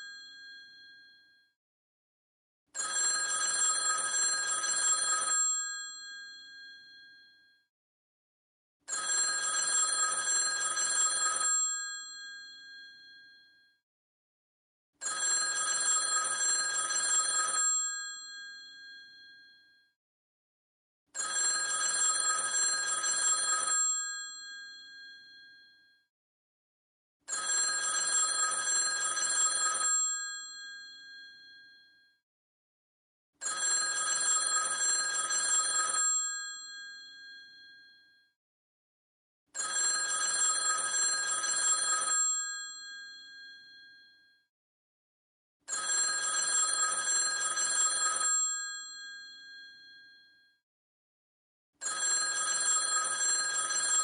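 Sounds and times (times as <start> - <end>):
rotary telephone bell ringing: 9.0 - 11.7, 15.1 - 18.3, 27.4 - 31.2, 33.5 - 37.1, 39.6 - 42.9, 45.8 - 49.6, 51.9 - 54.0.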